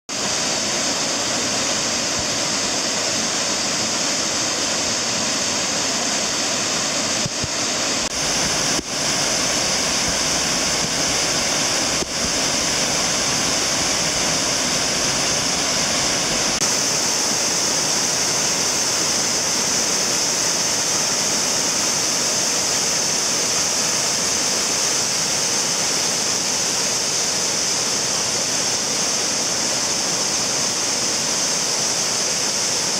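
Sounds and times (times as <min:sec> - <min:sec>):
waterfall roaring: 0:00.1 - 0:32.9.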